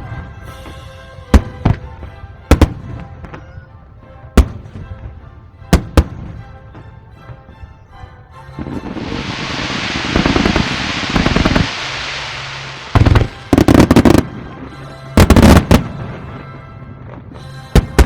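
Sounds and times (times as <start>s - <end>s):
fireworks crackling hiss: 8.5s - 16.6s, 17.2s - 18.0s
firework shell bursts: 8.6s - 14.4s.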